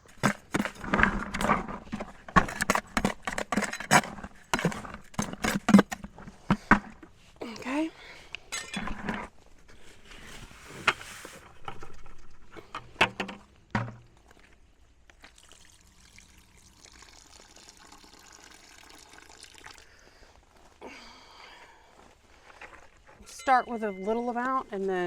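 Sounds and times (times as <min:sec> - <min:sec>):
water trickling into bucket: 0:15.1 - 0:20.3.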